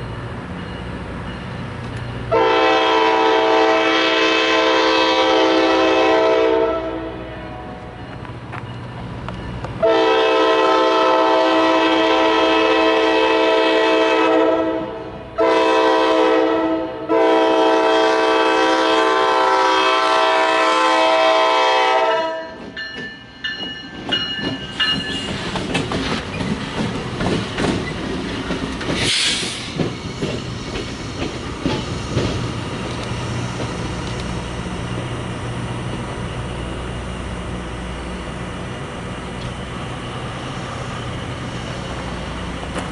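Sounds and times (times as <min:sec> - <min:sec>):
train wheels clicking over rail joints: 0:00.0 - 0:02.3, 0:22.5 - 0:36.9, 0:39.3 - 0:42.9
locomotive air horn blasts: 0:02.3 - 0:07.8, 0:09.8 - 0:22.6.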